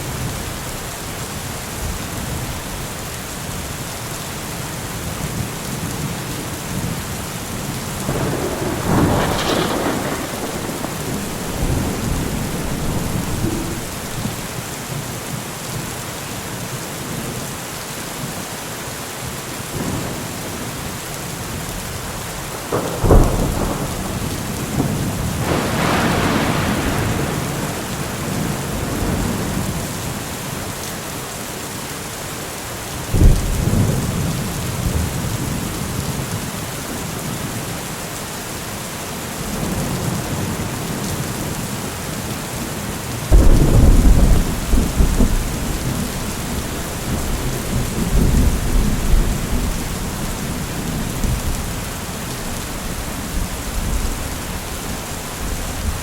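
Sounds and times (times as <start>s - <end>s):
heavy rain: 0.0s - 56.0s
thunder: 8.0s - 14.6s, 22.5s - 30.2s, 33.1s - 35.7s, 43.3s - 56.0s.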